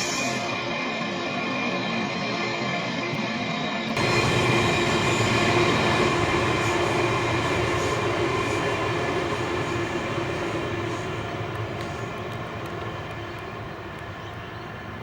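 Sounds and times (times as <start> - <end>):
electric train running past: 0.0 - 15.0
whining tones: 4.0 - 15.0.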